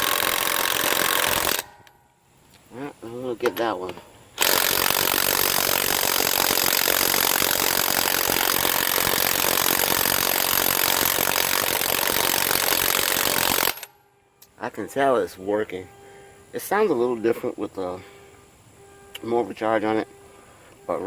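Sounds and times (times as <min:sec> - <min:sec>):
impact wrench hammering: 0:00.0 - 0:02.0, 0:03.4 - 0:13.9.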